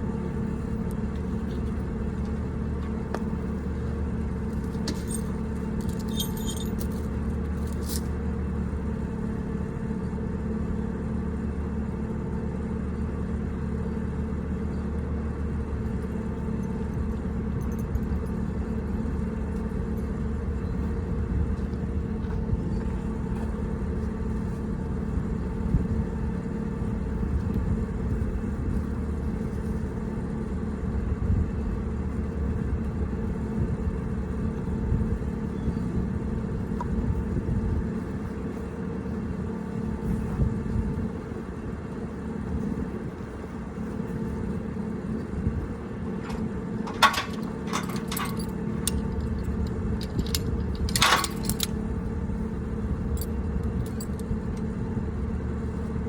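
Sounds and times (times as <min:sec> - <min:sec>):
motor running steadily: 0:00.0 - 0:56.0
sharp metallic clinks: 0:04.9 - 0:07.0, 0:46.9 - 0:51.8.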